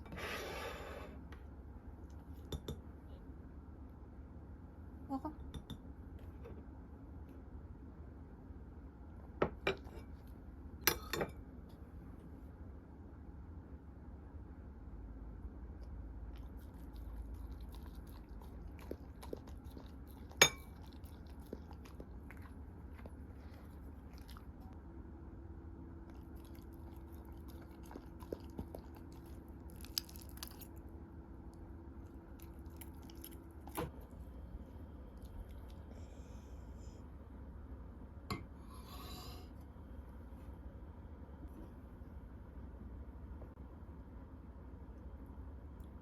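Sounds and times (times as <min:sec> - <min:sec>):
dog chewing food: 0:16.3 - 0:24.8, 0:26.1 - 0:30.9, 0:32.0 - 0:34.2.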